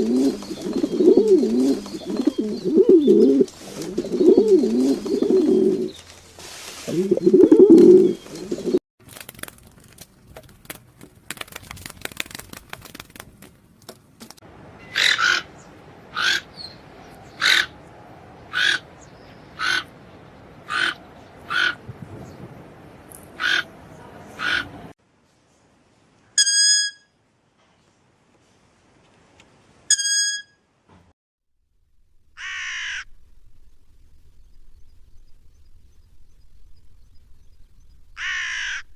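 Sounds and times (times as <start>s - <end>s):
low coo: 0.0s - 5.9s, 6.9s - 8.8s
bird sharp calls: 0.0s - 6.1s, 6.9s - 8.8s, 14.6s - 22.4s, 23.2s - 24.8s.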